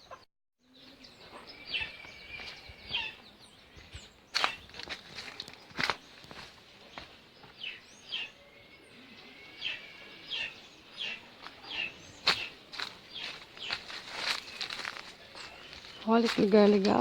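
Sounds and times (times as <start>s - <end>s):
footsteps crunching on dry ground: 1.2s - 8.0s, 10.4s - 17.0s.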